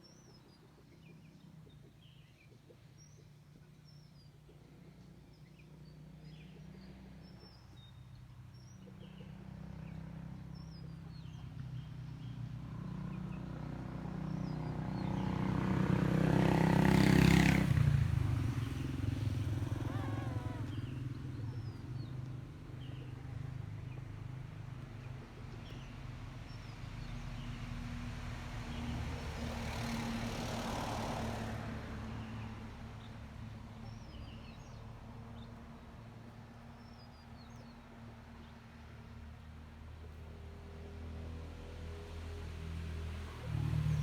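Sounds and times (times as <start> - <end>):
small birds chirping: 0.0 - 13.5, 14.2 - 27.6, 32.1 - 40.2
passing vehicle: 8.9 - 44.0
vehicle engine running: 14.4 - 25.9.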